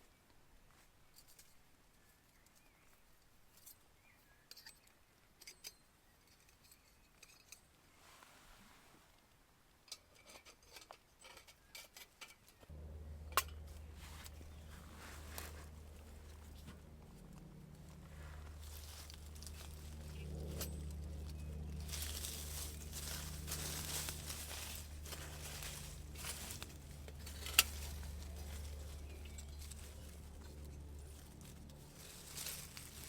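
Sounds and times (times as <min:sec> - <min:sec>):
steady low hum: 0:12.7 - 0:33.0.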